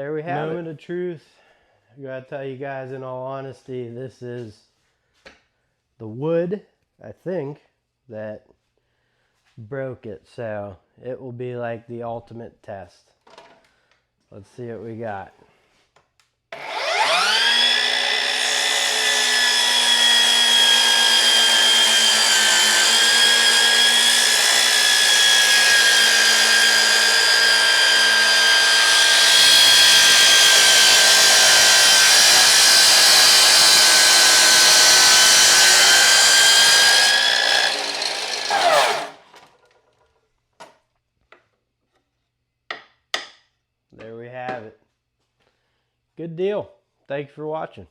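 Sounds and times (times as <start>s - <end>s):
miter saw whining through board: 16.6s - 39.6s.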